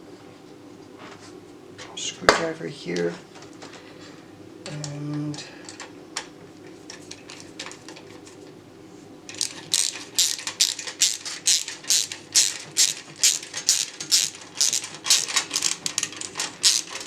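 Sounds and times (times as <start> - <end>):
ratcheting screwdriver clicking: 9.3 - 17.0.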